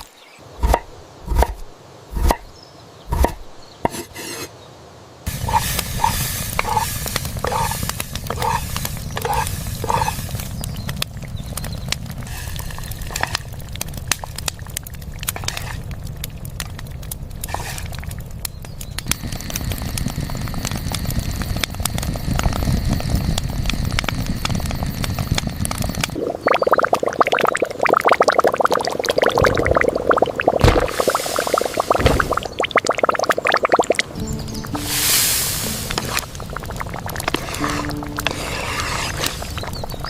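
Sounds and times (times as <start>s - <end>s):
sharp clicks and crackles: 5.3s - 26.2s.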